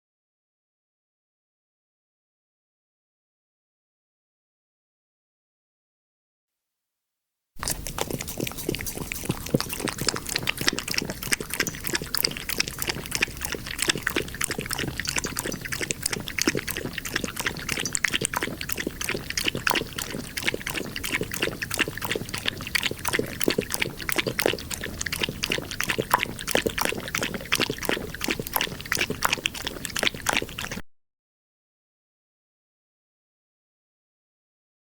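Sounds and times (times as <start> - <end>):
kitten lapping milk: 7.6 - 30.8.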